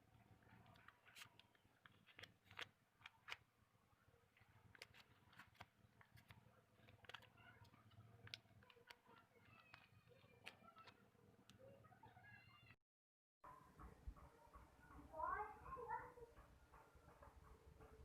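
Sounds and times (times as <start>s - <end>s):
faint irregular clicks: 0.0s - 12.2s.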